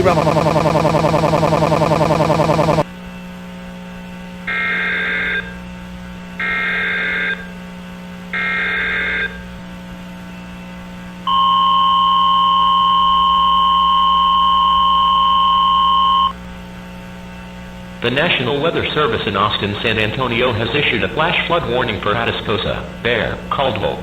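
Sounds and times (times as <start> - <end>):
screeching digital data tones: 11.3 - 16.4
two-tone attention signal: 11.3 - 16.4.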